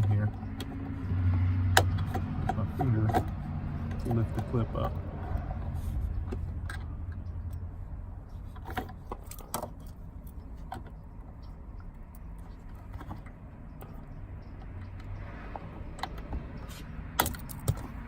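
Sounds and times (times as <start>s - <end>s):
plastic parts clicking and rattling: 0.0s - 5.0s, 8.3s - 11.5s, 12.2s - 18.0s.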